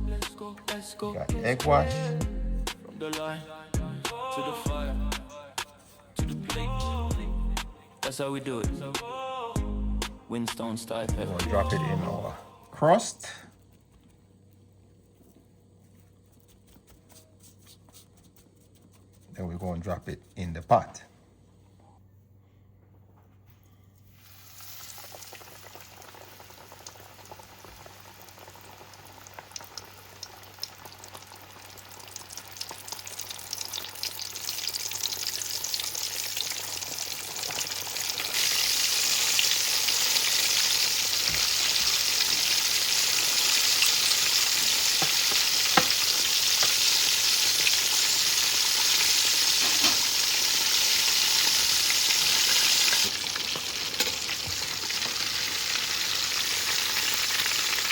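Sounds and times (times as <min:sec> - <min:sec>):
fish deep-frying in oil: 0:24.1 - 0:57.9.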